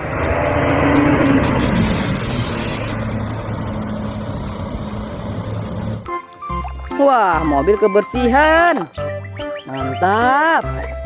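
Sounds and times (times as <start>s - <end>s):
loud hiss: 0.0s - 3.0s
truck engine running: 0.0s - 6.2s.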